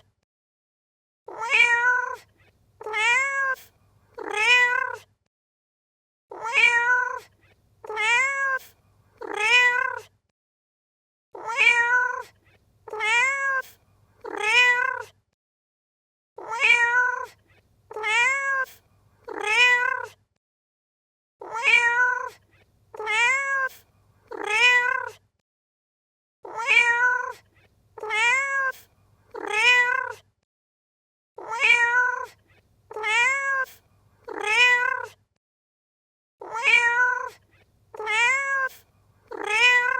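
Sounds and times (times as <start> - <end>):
cat meowing: 1.3 - 5.1, 6.3 - 10.1, 11.4 - 15.1, 16.4 - 20.2, 21.4 - 25.2, 26.4 - 30.2, 31.4 - 35.2, 36.4 - 39.9.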